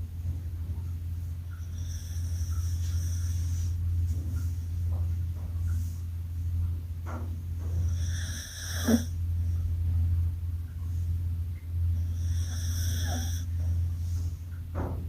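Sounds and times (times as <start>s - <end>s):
steady low hum: 0.0s - 15.0s
dog snoring: 1.6s - 3.8s, 7.7s - 9.2s, 12.0s - 13.6s.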